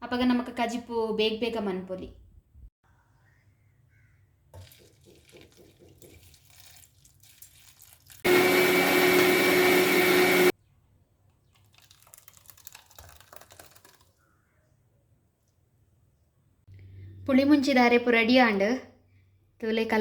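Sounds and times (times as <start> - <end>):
mixer grinder running: 8.2 - 10.5.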